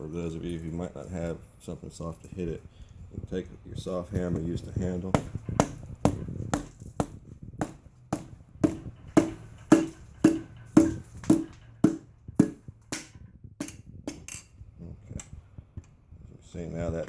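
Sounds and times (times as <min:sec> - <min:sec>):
hammer handle tapping on metal: 0:05.2 - 0:14.4.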